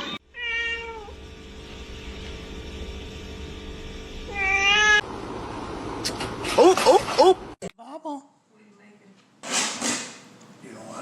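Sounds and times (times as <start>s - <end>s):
cat meowing: 0.4s - 1.1s, 4.3s - 5.0s.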